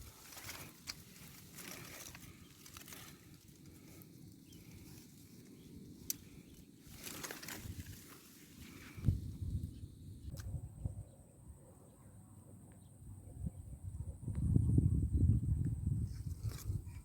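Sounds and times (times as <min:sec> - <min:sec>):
rustling: 0:00.0 - 0:09.1.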